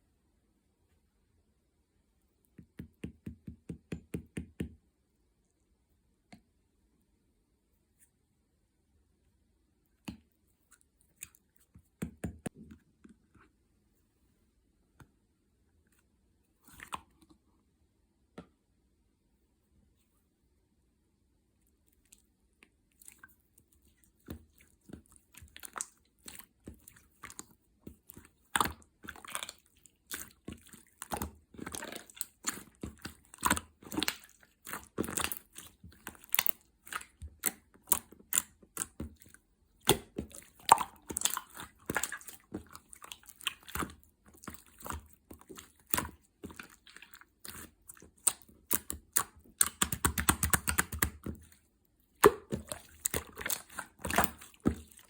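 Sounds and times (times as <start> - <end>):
fingers squishing slime: 22.0 - 55.0.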